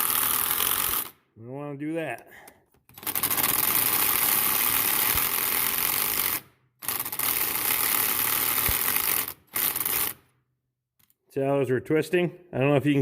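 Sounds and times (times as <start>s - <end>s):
impact wrench hammering: 0.0s - 1.2s, 2.8s - 10.2s.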